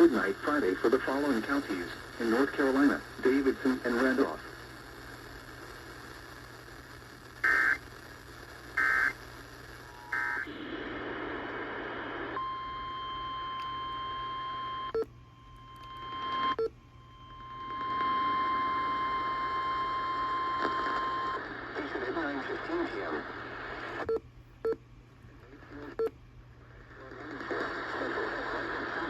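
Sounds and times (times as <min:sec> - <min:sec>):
radio static hiss: 0:00.0 - 0:12.6, 0:17.4 - 0:24.2, 0:25.3 - 0:29.0
radio clicks: 0:27.1 - 0:29.0.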